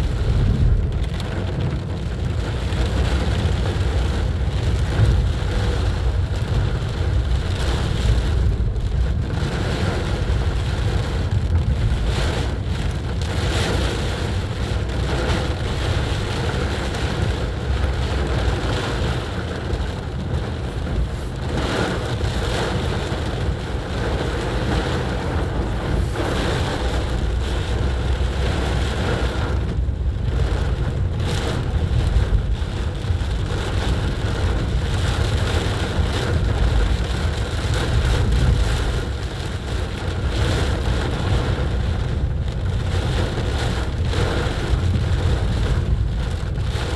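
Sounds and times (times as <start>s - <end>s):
car rumbling: 0.0s - 46.9s
heavy rain hissing: 20.1s - 32.3s.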